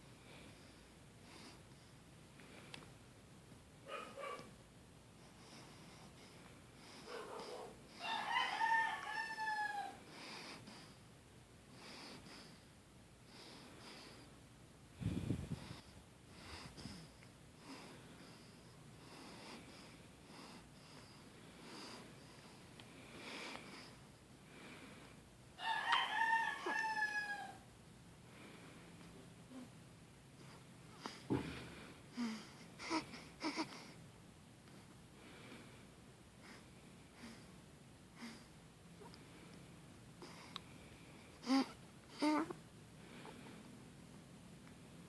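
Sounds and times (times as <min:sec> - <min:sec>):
faint snoring breaths: 0:05.2 - 0:08.1, 0:10.0 - 0:11.1, 0:11.7 - 0:14.4, 0:15.0 - 0:25.2, 0:40.2 - 0:43.8
rooster crowing: 0:08.0 - 0:10.0, 0:25.6 - 0:27.7.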